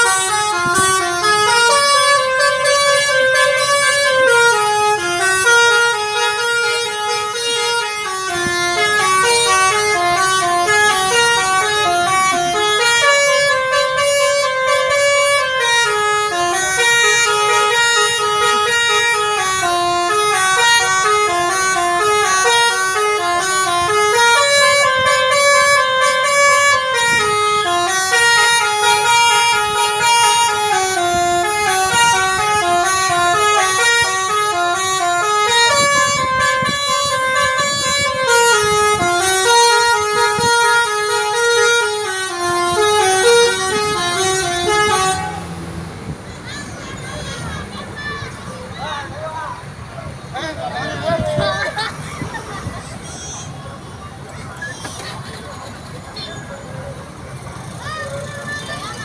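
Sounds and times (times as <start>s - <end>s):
bus multi-tone air horn melody: 0.0s - 45.8s.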